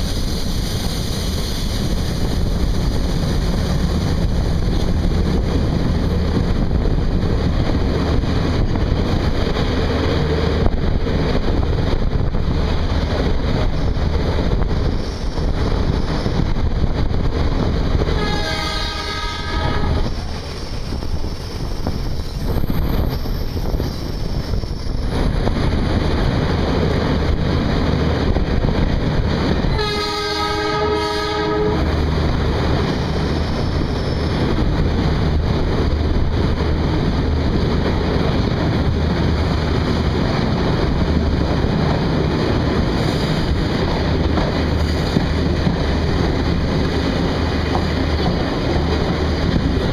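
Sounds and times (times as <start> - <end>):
train wheels rumbling on track: 0.0 - 49.9
train horn blasts: 18.1 - 20.3, 29.7 - 32.0.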